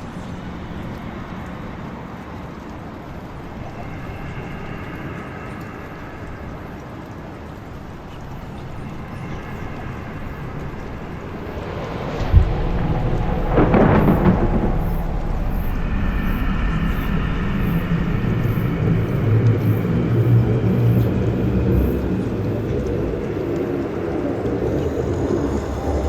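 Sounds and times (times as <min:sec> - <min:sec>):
low rumble drone: 0:08.5 - 0:26.0
sharp hit: 0:11.0 - 0:19.0.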